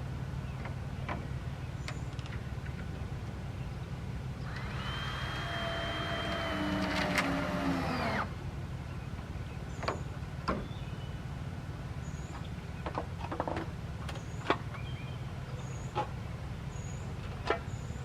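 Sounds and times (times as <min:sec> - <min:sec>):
power drill motor whining: 0:04.4 - 0:08.3.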